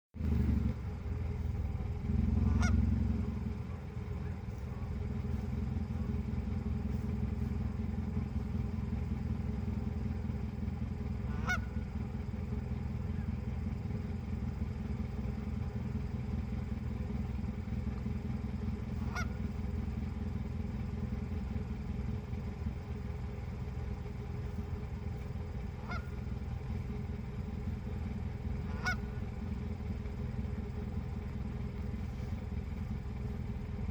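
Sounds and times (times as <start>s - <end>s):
steady low rumble: 0.1s - 33.9s
goose honking: 2.2s - 5.6s, 11.2s - 12.0s, 18.9s - 19.6s, 25.7s - 26.3s, 28.6s - 29.2s.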